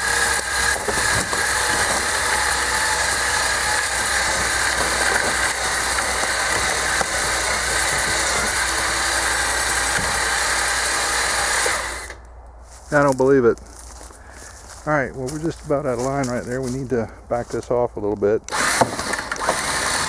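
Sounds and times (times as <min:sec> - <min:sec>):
winch motor running: 0:00.0 - 0:12.3, 0:18.5 - 0:20.0.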